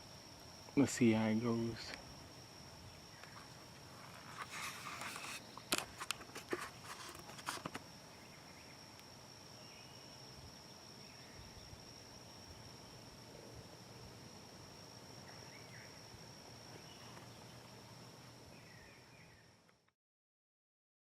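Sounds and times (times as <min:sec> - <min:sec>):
insect drone: 0:00.0 - 0:19.9
rustling: 0:03.2 - 0:07.9.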